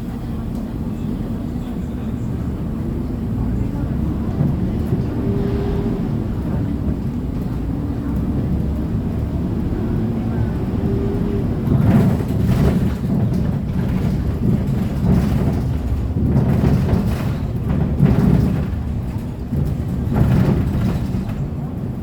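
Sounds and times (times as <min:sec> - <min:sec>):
bus engine and road rumble: 0:00.0 - 0:22.0
thumps and rattles: 0:11.6 - 0:21.6.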